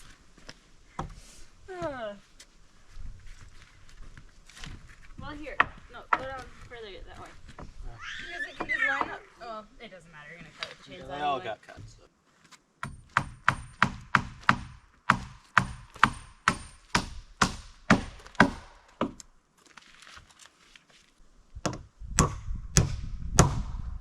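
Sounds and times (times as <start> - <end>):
hammer driving nails into wood: 12.8 - 19.2.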